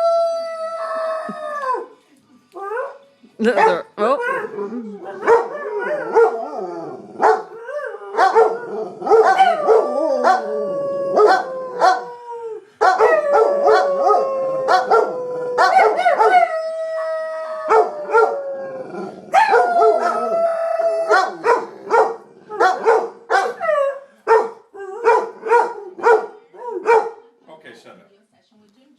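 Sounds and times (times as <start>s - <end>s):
dogs howling: 4.2s - 27.0s
dogs barking and yipping: 5.2s - 6.5s, 7.2s - 10.5s, 19.3s - 20.3s, 21.1s - 27.2s.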